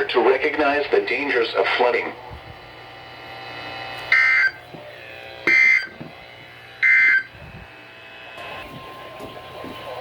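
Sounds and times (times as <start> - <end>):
screechy digital data tones: 4.1 - 4.6, 5.5 - 6.0, 6.8 - 7.3.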